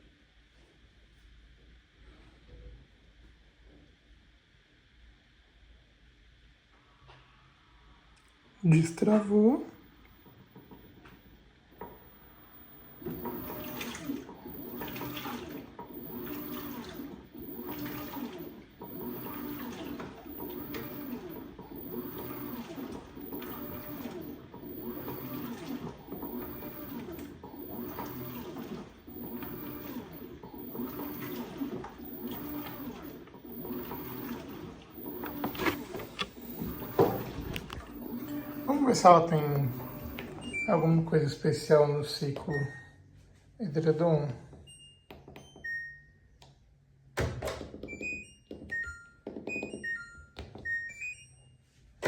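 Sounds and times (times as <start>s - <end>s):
washing machine sloshing: 8.9s - 41.6s.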